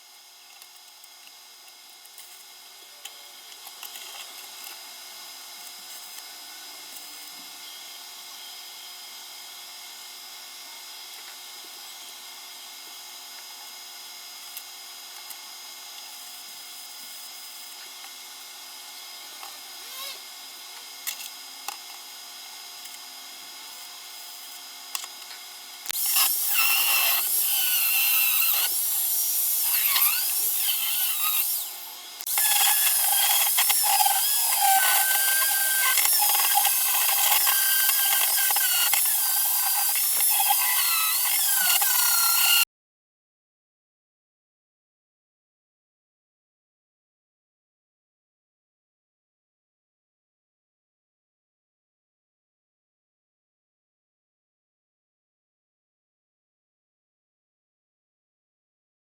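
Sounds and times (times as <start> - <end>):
workshop hum: 16.0 - 42.6
power tool grinding metal: 25.8 - 42.6.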